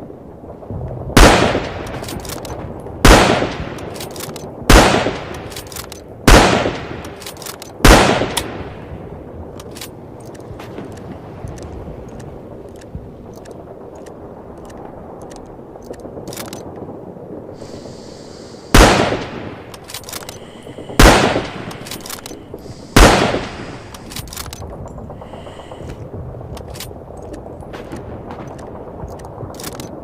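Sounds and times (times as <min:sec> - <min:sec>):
rifle shots with echo: 0:01.2 - 0:08.9, 0:18.7 - 0:24.5.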